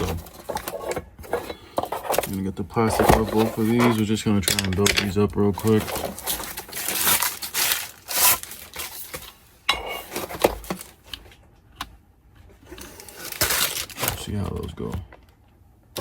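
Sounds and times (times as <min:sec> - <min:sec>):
plastic packaging crinkling: 0:00.0 - 0:11.4, 0:12.8 - 0:14.9
parts clicking: 0:02.9 - 0:06.2.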